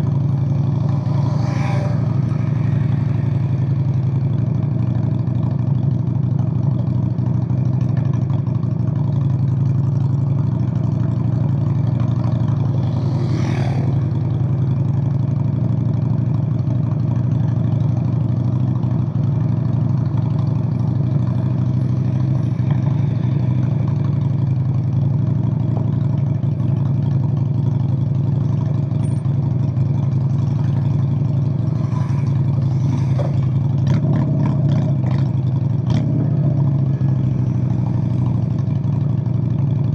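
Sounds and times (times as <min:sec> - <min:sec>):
motorcycle engine running: 0:00.0 - 0:39.9.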